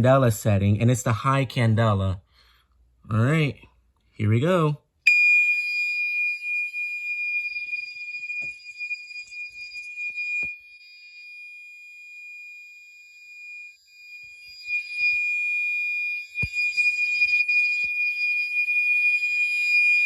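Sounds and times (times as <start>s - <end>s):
fire alarm horn steady tone: 5.1s - 20.0s.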